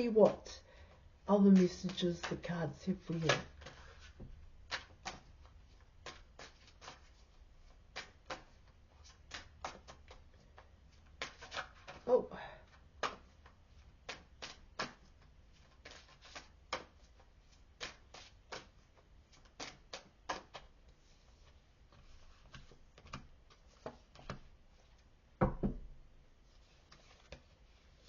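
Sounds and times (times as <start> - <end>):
cards clicking and slapping: 1.6 - 12.0, 12.7 - 20.8, 21.9 - 25.0.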